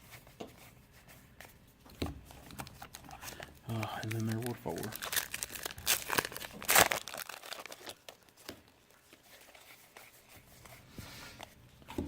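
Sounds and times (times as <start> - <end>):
cards rustling: 2.2 - 11.6
trading cards clicking: 3.7 - 4.9.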